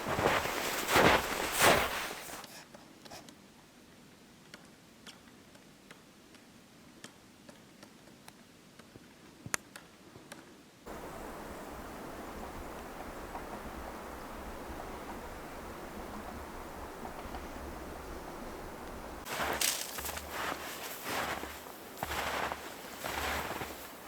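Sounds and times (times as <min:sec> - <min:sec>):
rustling scrapes: 0:00.0 - 0:02.6, 0:19.2 - 0:24.0
steady hiss: 0:00.0 - 0:02.6, 0:10.9 - 0:24.0.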